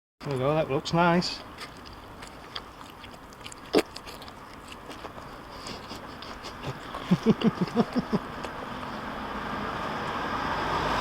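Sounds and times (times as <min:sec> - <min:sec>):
person chewing meat: 0:01.3 - 0:09.2
wet mouth clicks: 0:01.4 - 0:07.4.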